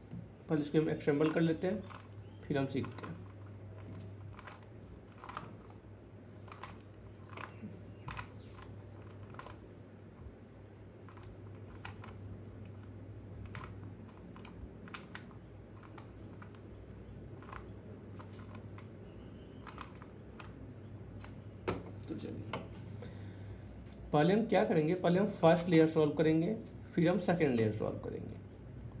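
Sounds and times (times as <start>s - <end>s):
puzzle cube clicking: 1.2s - 5.7s, 6.4s - 9.6s, 11.1s - 12.3s, 17.4s - 20.6s.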